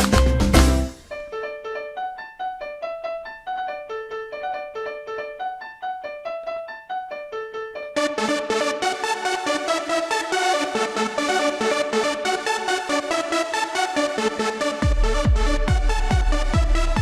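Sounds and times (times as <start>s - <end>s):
loud beat-driven music: 0.0s - 1.0s, 13.6s - 17.0s
soft piano melody: 0.0s - 14.3s.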